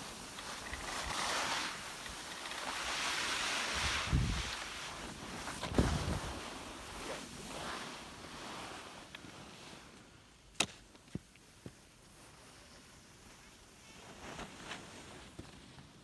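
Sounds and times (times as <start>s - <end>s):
skis sliding on snow: 0.0s - 9.9s, 11.6s - 16.0s
wind rushing: 3.8s - 4.6s.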